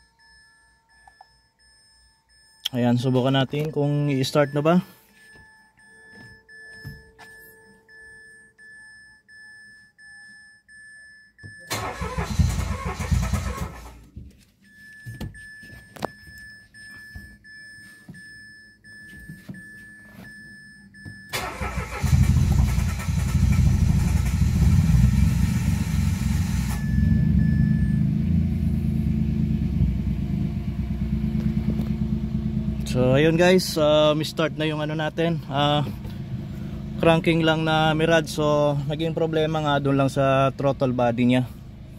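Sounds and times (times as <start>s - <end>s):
steady high beep: 0.0s - 11.7s, 26.7s - 28.1s
car engine cranking and starting: 11.6s - 14.1s, 21.0s - 41.9s.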